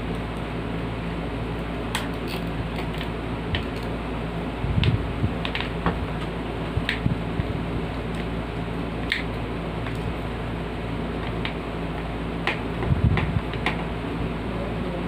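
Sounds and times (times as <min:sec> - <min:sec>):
steady low hum: 0:00.0 - 0:15.0
plastic fan parts clicking: 0:01.9 - 0:04.0, 0:04.8 - 0:08.3, 0:09.0 - 0:10.2, 0:11.2 - 0:13.9.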